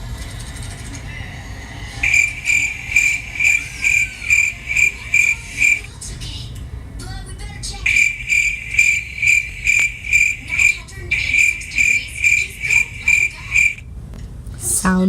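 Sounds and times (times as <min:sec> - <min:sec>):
cricket chirping: 0:02.0 - 0:05.9, 0:07.8 - 0:13.8.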